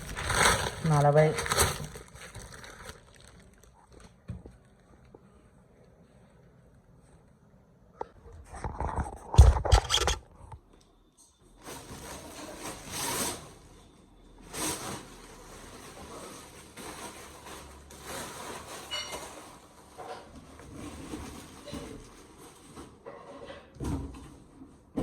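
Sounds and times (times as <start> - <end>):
packaging rustling and scraping: 0.0 - 5.1, 8.1 - 10.6, 11.5 - 23.6.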